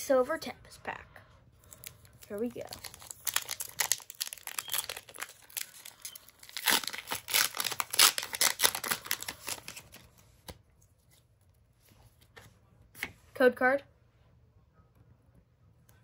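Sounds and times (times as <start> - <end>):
foil wrapper tearing and crinkling: 1.8 - 10.1.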